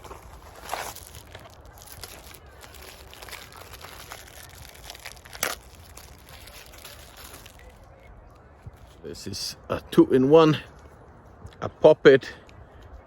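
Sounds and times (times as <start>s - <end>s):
plastic packaging crinkling: 0.0s - 7.8s.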